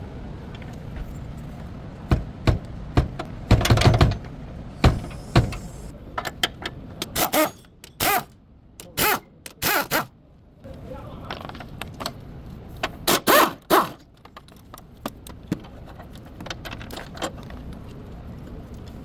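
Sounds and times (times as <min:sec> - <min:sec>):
irregular knocks and thunks: 0:02.1 - 0:05.8.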